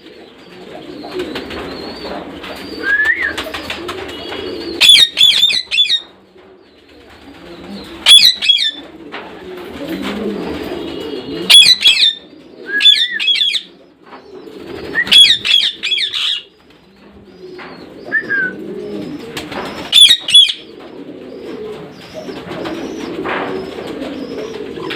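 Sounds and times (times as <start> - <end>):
parrots chirping: 4.8 - 6.0, 8.1 - 8.8, 11.5 - 12.2, 15.1 - 16.4, 19.9 - 20.6.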